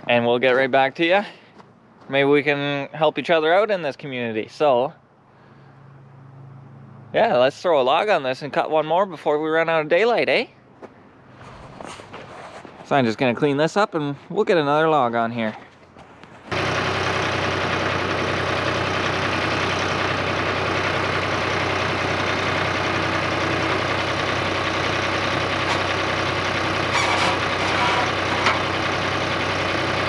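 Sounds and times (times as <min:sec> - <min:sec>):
engine running steadily: 0:15.5 - 0:30.0
short metallic clanks: 0:26.9 - 0:28.7.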